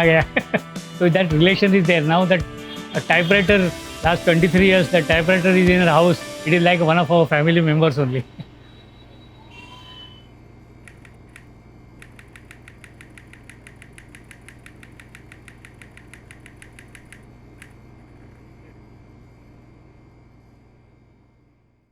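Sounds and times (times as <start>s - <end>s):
typewriter keys clicking: 12.0s - 17.2s.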